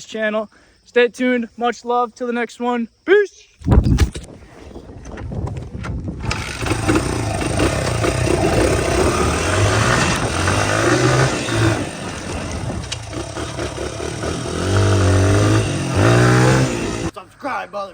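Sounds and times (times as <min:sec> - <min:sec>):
motorbike engine revving: 0:06.2 - 0:17.1.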